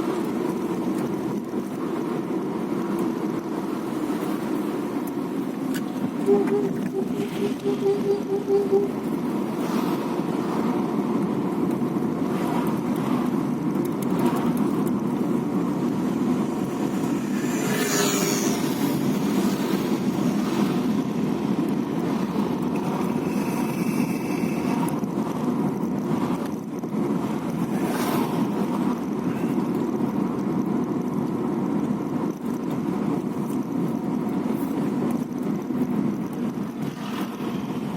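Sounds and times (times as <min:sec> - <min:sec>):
car road and engine noise: 0:00.0 - 0:37.9
short scrape: 0:17.3 - 0:18.8
high brake squeal: 0:23.2 - 0:24.9.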